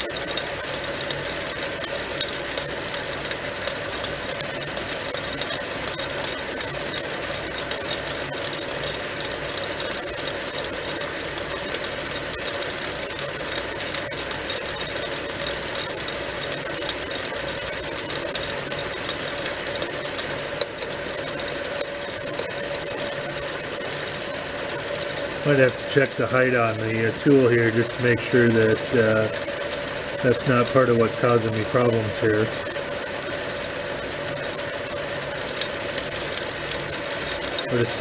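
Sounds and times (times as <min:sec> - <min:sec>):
metal lathe humming: 0:00.0 - 0:38.0.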